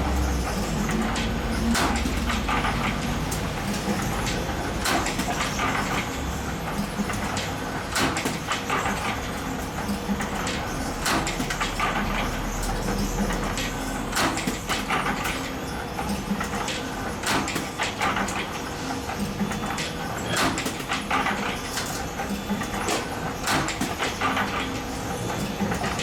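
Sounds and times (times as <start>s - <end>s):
spring-making machine hum: 0.0s - 26.0s
sharp mechanical clacks: 9.9s - 24.8s.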